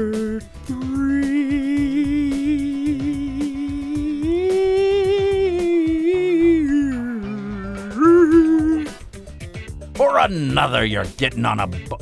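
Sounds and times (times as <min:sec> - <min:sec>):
person humming: 0:00.0 - 0:09.1
background music with a beat: 0:00.0 - 0:12.0.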